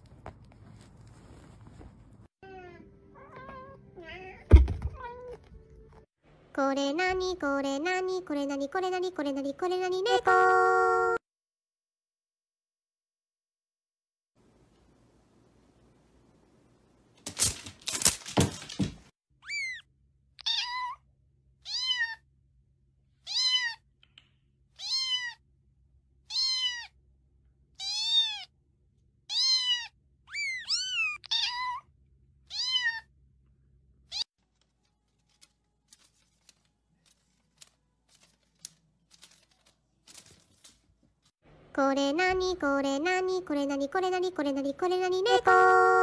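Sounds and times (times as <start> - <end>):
cat meowing: 2.4 - 5.4, 20.4 - 21.0, 21.6 - 22.2, 23.2 - 23.8, 24.8 - 25.4, 26.3 - 27.0, 27.8 - 28.5, 29.3 - 31.9, 32.5 - 33.1.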